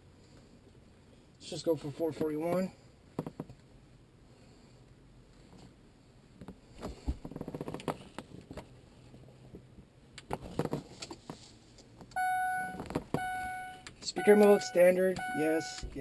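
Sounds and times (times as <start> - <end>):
car stereo control clicks: 12.1 - 15.9
steady electronic tone: 12.2 - 15.9.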